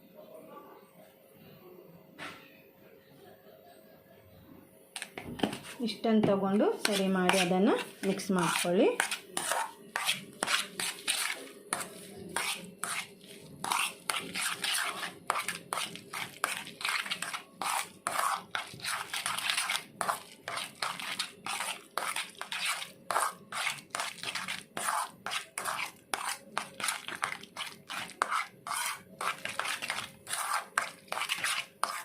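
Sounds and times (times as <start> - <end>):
spoon scraping and clinking bowl: 6.8 - 32.0.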